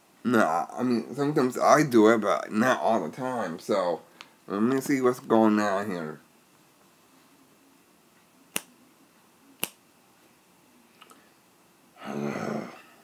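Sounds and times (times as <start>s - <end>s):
sharp snaps: 8.5s - 8.8s, 9.6s - 9.8s.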